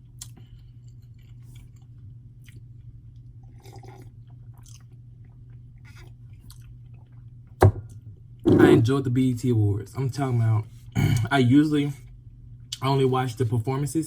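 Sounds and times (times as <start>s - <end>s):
person chewing wetly: 0.0s - 7.5s
steady low hum: 0.0s - 14.0s.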